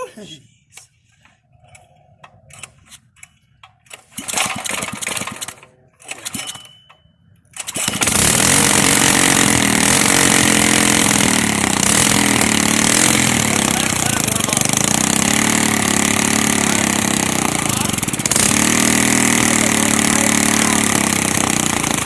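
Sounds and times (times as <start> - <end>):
recoil starter pulls: 0.7 - 22.0
small engine running loud: 7.6 - 22.0.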